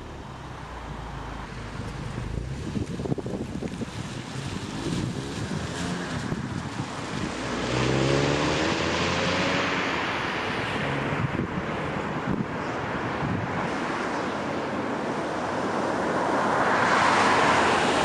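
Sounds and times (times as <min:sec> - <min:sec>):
car engine revving: 0:00.0 - 0:11.2
road noise: 0:00.0 - 0:18.0
wind buffeting microphone: 0:00.3 - 0:08.1, 0:10.2 - 0:14.0.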